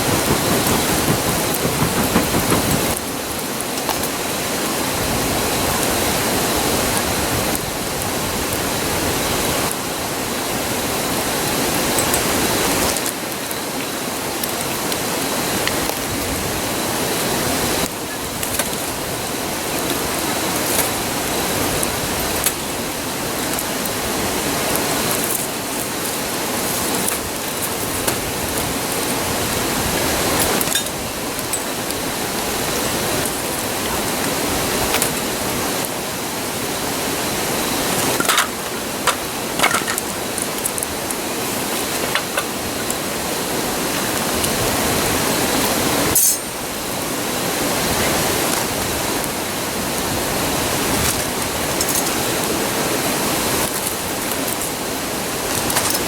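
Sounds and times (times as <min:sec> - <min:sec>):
campfire crackling: 0:00.0 - 0:04.1, 0:17.8 - 0:34.2
river rushing: 0:00.0 - 0:07.4.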